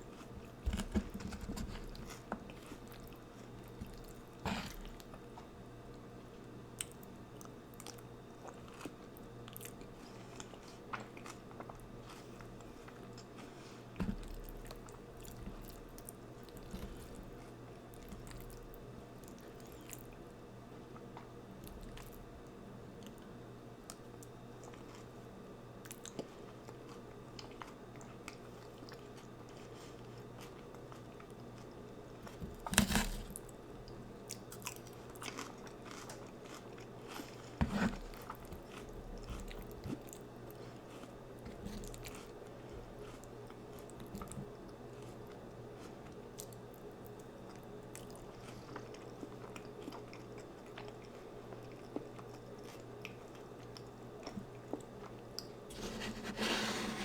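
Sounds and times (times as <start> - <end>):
person chewing: 34.3 - 44.4.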